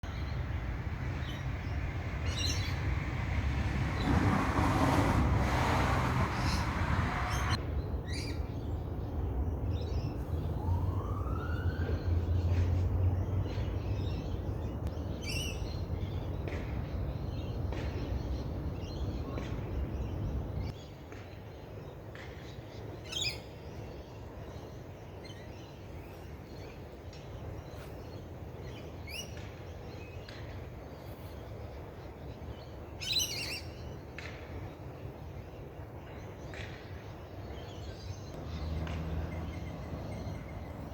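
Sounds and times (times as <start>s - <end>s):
birds chirping: 0.0s - 7.6s, 35.5s - 40.9s.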